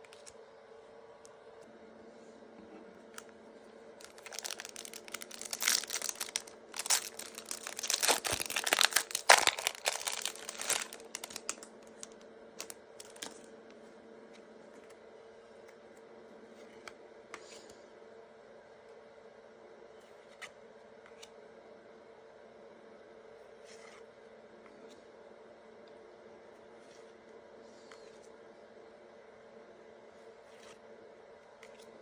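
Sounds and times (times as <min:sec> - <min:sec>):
faint steady hum: 0:00.0 - 0:32.0
foil wrapper tearing and crinkling: 0:04.0 - 0:13.4.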